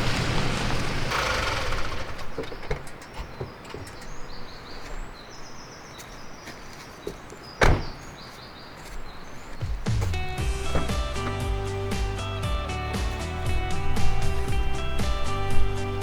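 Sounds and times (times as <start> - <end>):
small birds chirping: 0.2 - 16.0
loud thump: 7.6 - 8.0.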